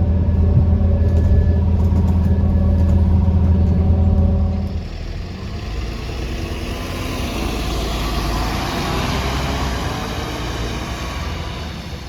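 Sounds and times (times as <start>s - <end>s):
turbo whine: 0.0s - 5.1s
bus driving: 0.0s - 12.0s.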